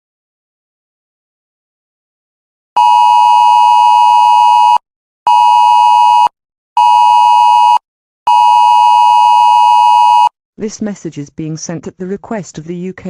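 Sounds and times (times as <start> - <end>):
electronic emergency alert beep: 2.8 - 10.3.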